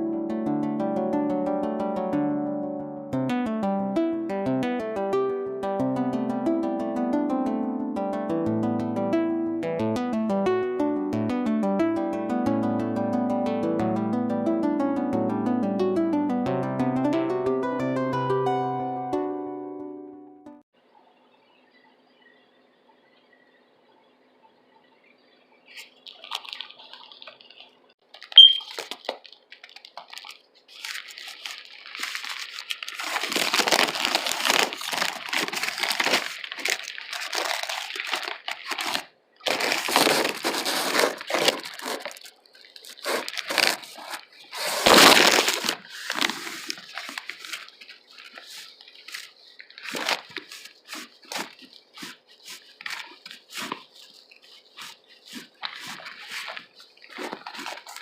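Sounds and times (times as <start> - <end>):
crackles of bread: 24.8 - 58.0
wet chewing and smacking: 25.8 - 33.0.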